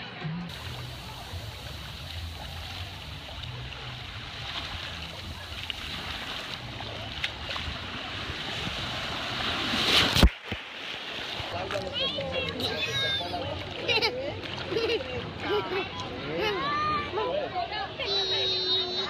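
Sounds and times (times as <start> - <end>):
water rushing: 0.5 - 15.6.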